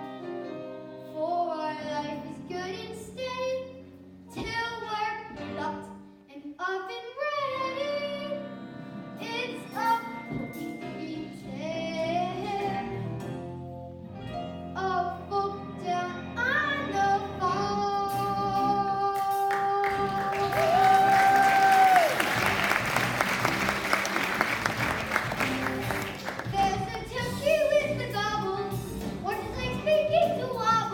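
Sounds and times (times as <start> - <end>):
instrumental accompaniment: 7.5 - 30.9
audience applause: 19.8 - 26.6.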